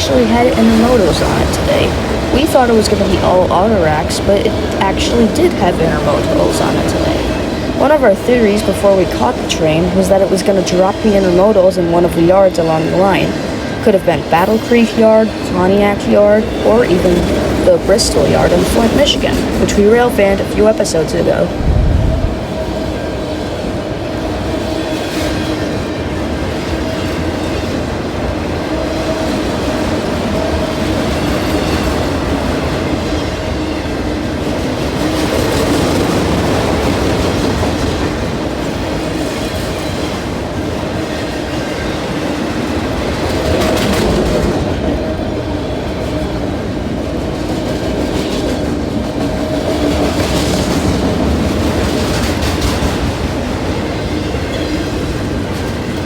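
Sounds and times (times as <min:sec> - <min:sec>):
train rumble and wheel clatter: 0:00.0 - 0:56.0
steady tone: 0:21.3 - 0:22.7.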